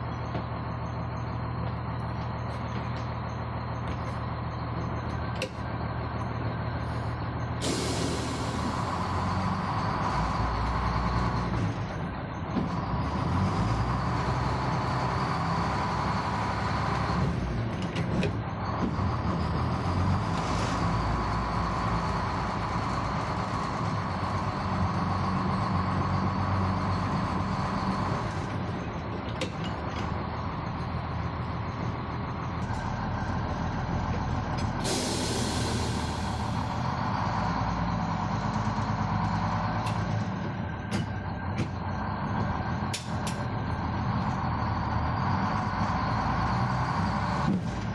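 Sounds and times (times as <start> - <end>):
hiss: 7.6 - 9.1, 34.9 - 36.8.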